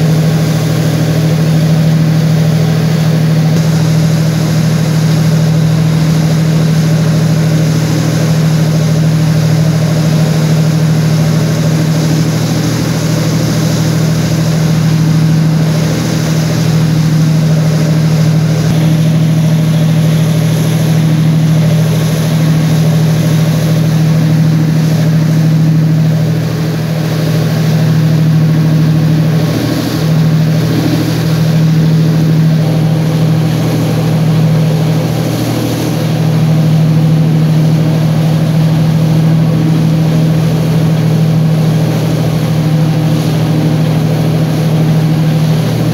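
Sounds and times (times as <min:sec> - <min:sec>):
boat engine running: 0:00.0 - 0:45.9.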